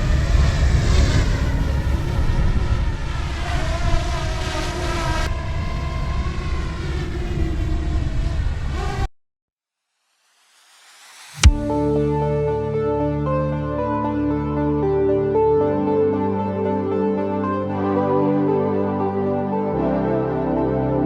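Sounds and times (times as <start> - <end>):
wind rumbling on microphone: 0.0 - 9.1.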